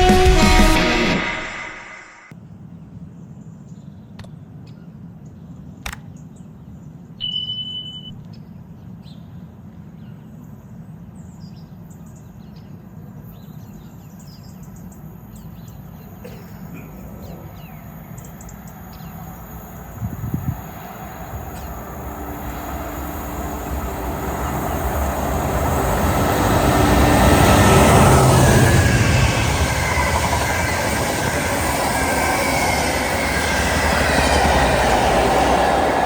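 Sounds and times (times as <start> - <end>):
brief high tone: 0.0 - 2.3, 7.2 - 8.2
train approaching rumble: 0.0 - 2.3, 14.8 - 36.0
small birds chirping: 3.4 - 26.8.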